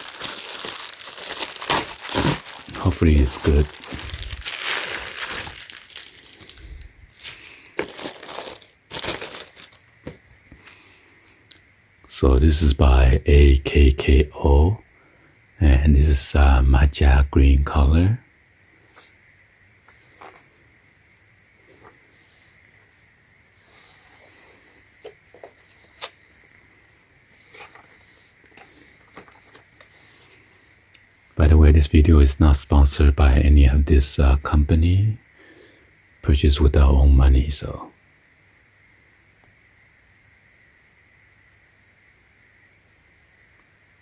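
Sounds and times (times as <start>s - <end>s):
packaging crinkling and rustling: 0.0s - 10.9s, 23.6s - 30.8s.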